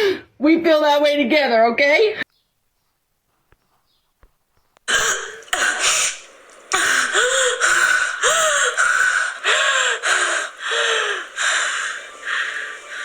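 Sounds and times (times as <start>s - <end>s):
person gasping and breathing hard: 4.9s - 13.0s.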